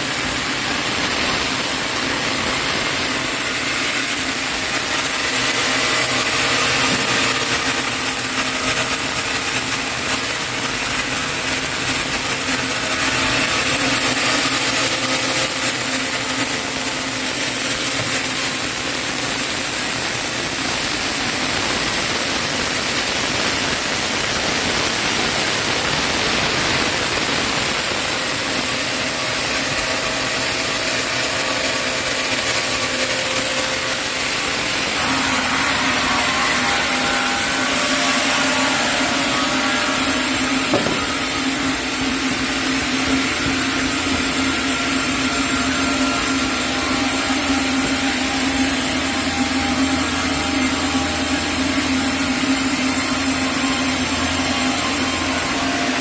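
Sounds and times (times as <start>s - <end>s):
saw blade cutting log: 0.0s - 18.9s, 28.6s - 56.0s
machine hum: 0.0s - 56.0s.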